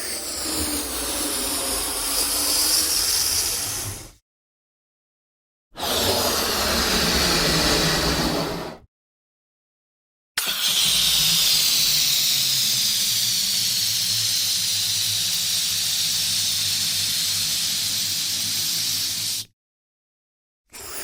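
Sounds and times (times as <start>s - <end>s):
balloon inflator rushing air: 0.0s - 4.2s, 5.8s - 8.8s, 10.4s - 19.5s.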